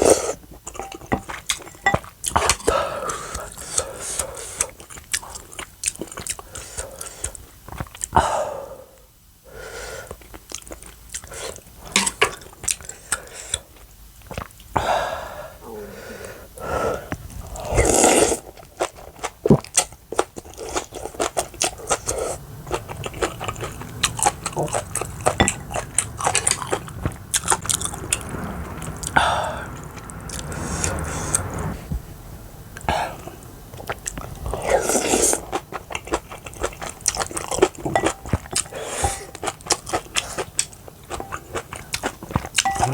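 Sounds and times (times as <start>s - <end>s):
biting and chewing: 17.4s - 29.2s, 33.2s - 42.9s.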